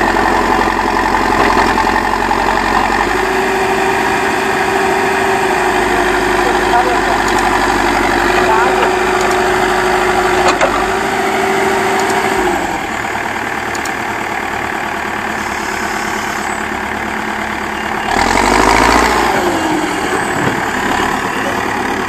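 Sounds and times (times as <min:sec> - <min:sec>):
diesel engine running: 0:00.0 - 0:22.0
steady whine: 0:05.0 - 0:13.1.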